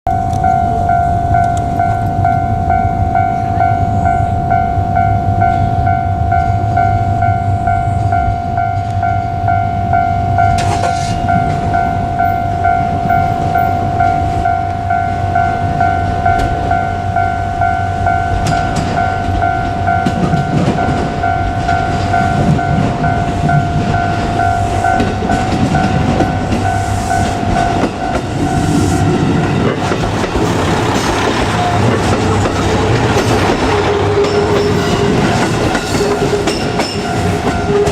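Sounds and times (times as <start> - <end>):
diesel railcar rumble: 0.1 - 37.9
level crossing bell ringing: 0.1 - 37.9
wheels clattering over rail joints: 18.3 - 37.9.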